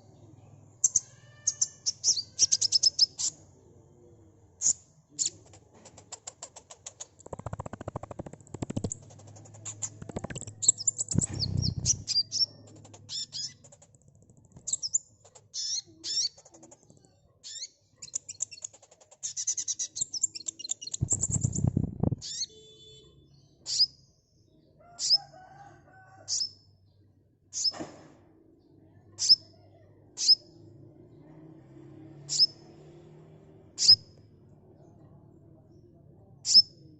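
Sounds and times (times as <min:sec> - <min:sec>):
low fluttering bursts: 0:07.0 - 0:12.1.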